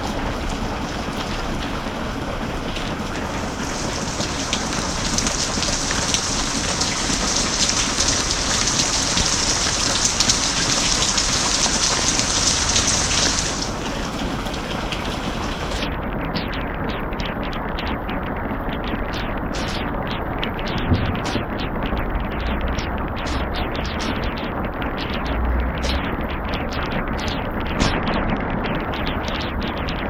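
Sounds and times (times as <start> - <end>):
steady rain falling: 0.0 - 30.0.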